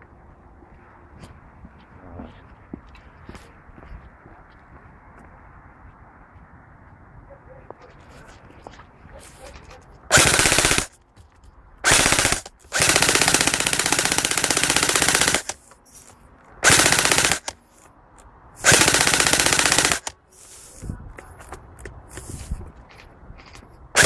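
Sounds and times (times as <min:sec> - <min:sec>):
airsoft gun firing bursts: 0:10.1 - 0:11.0, 0:11.8 - 0:15.6, 0:16.6 - 0:17.6, 0:18.6 - 0:20.2.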